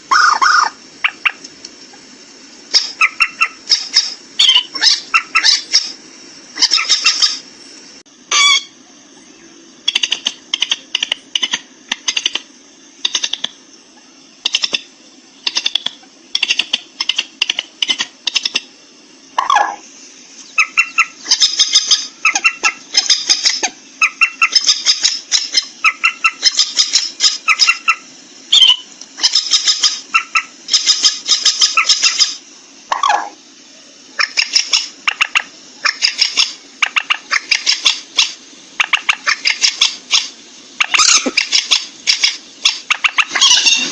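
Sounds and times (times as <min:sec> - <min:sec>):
bird harsh pulsed calls: 0:00.0 - 0:01.4, 0:02.7 - 0:07.4, 0:08.3 - 0:12.3, 0:19.3 - 0:33.3, 0:34.2 - 0:43.9.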